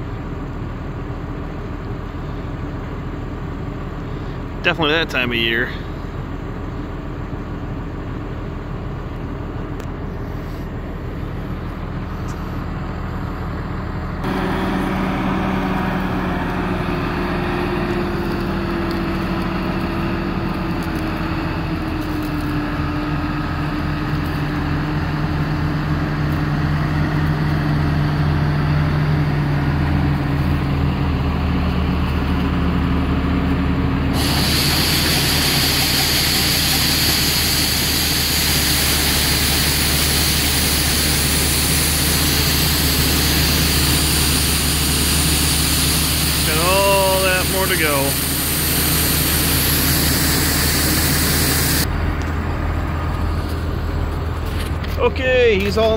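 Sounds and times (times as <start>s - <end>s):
diesel engine droning: 0.0s - 55.9s
hissing rush: 34.1s - 51.9s.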